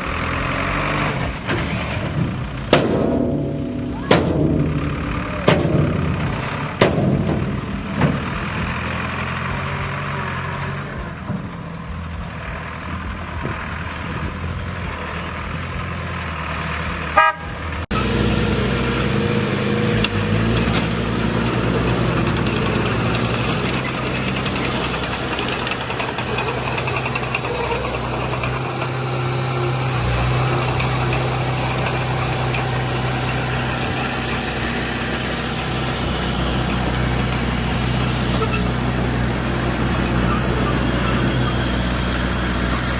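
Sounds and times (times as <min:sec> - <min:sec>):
diesel earthmoving machinery engines: 0:00.0 - 0:42.9
short vehicle horn toot: 0:17.2 - 0:17.6.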